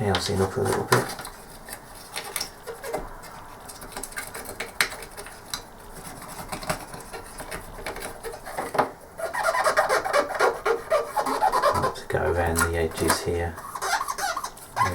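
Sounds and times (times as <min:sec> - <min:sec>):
cotton bud rubbing plastic: 0:00.0 - 0:14.9
plastic housing handled: 0:00.1 - 0:09.0.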